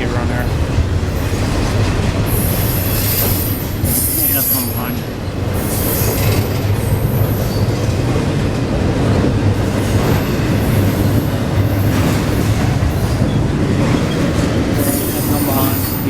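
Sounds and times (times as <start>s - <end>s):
train wheels rumbling on rail: 0.0s - 16.0s
high wheel squeal: 2.3s - 8.0s, 9.8s - 16.0s.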